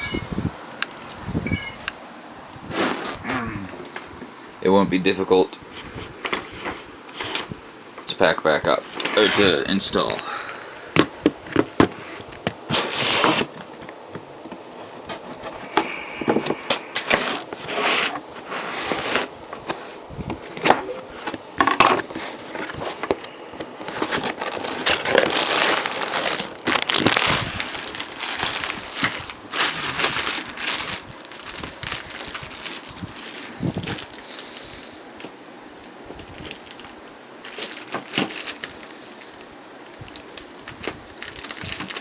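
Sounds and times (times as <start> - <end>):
packaging crinkling and rustling: 11.4 - 35.3, 36.2 - 42.0.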